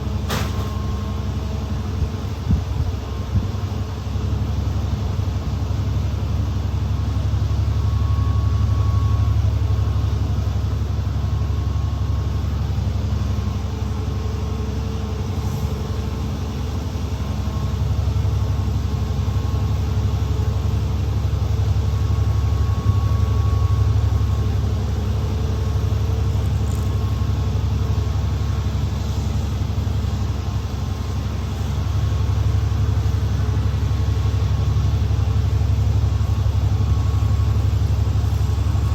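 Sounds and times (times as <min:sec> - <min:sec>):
bus engine rumble: 0:00.0 - 0:38.9
faint whine: 0:05.6 - 0:38.9
road noise: 0:24.3 - 0:38.9.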